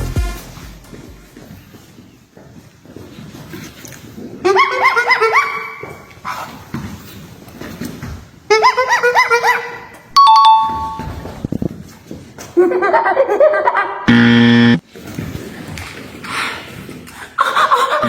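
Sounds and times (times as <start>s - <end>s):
two-tone ding-dong chime: 10.2s - 11.2s
harsh buzzer: 14.1s - 14.8s.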